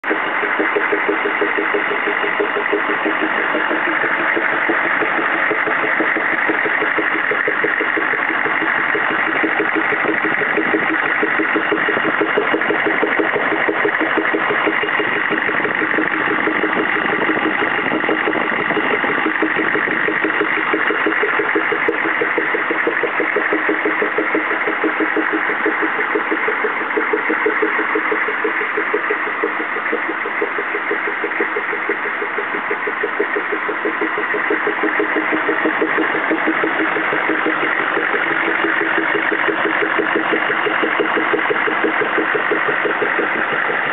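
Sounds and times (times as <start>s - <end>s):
diesel engine idling: 0.0s - 43.9s
rhythmic popping noise: 0.0s - 43.9s.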